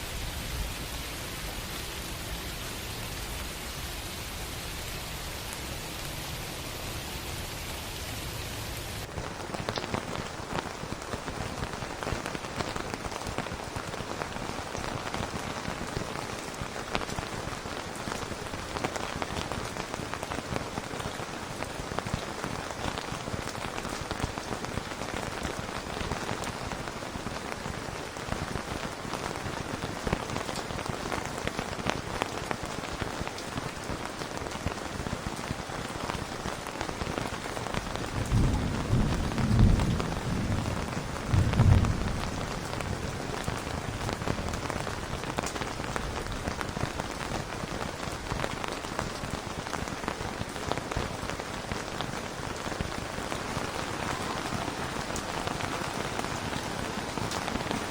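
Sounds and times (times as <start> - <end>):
rain hissing: 0.0 - 14.4, 35.2 - 57.9
raindrops ticking and pattering: 0.0 - 57.9.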